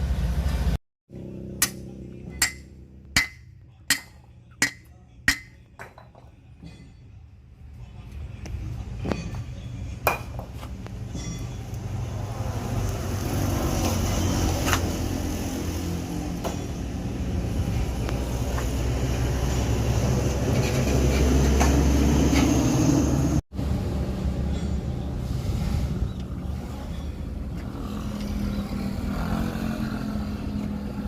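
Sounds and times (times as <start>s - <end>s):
low engine rumble: 0.0s - 29.0s
sharp metallic knocks: 1.5s - 7.1s.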